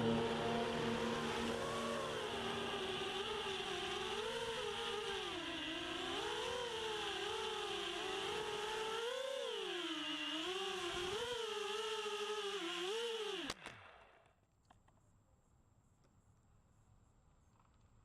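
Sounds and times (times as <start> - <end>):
quadcopter motors whining: 0.0 - 13.6.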